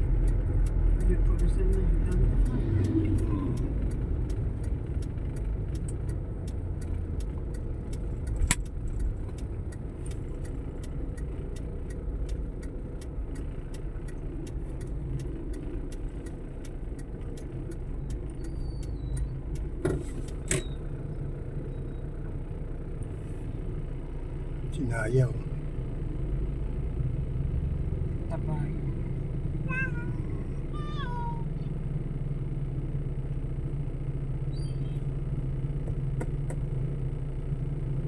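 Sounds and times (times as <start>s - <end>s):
road traffic rumble: 0.0s - 38.0s
sharp clicks: 0.1s - 20.7s.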